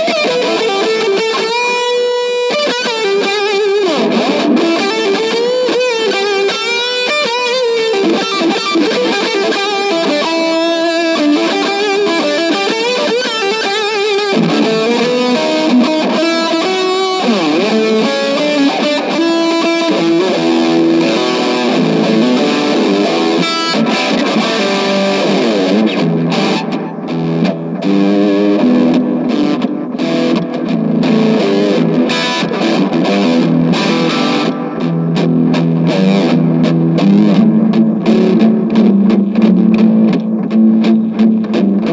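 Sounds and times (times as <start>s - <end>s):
distorted electric guitar: 0.0s - 41.9s.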